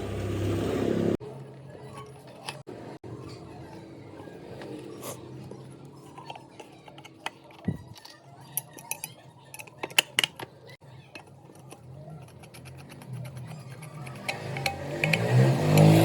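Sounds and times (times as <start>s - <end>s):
sharp metallic clicks and clinks: 11.2s - 16.0s.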